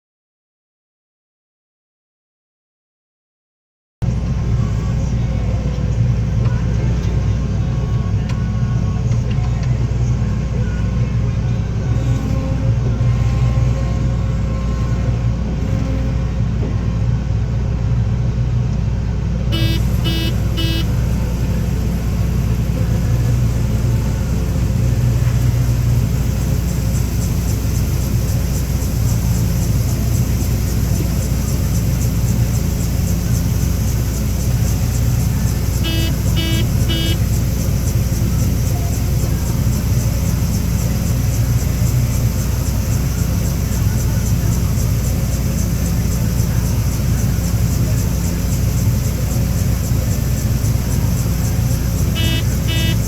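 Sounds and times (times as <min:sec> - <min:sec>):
harvest machinery engine droning: 0:04.0 - 0:53.0
short electronic beeps: 0:19.5 - 0:21.0, 0:35.8 - 0:37.2, 0:52.2 - 0:53.0
fast high ticking: 0:19.6 - 0:53.0.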